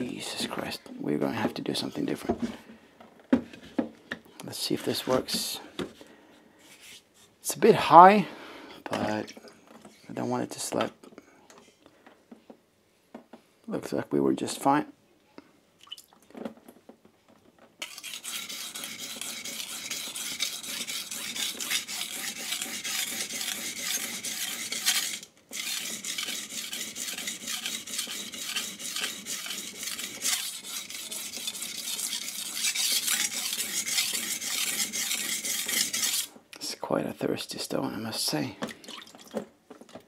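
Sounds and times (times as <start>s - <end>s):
knife sharpening on whetstone: 17.8s - 36.3s.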